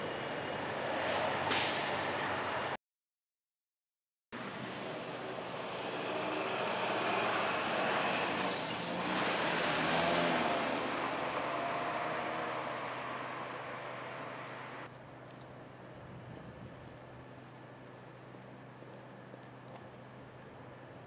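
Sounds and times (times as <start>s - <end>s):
vehicle driving past: 0.0s - 2.8s, 4.4s - 14.9s.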